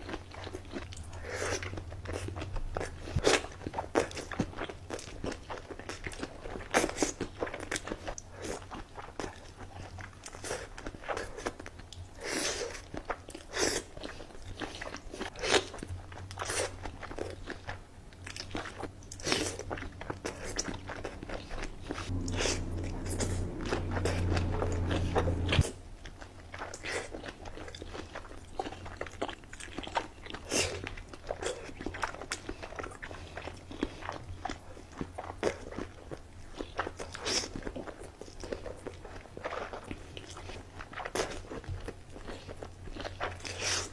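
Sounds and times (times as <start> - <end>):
biting and crunching seafood: 0.0 - 25.7, 26.5 - 43.9
low hum: 19.0 - 25.7.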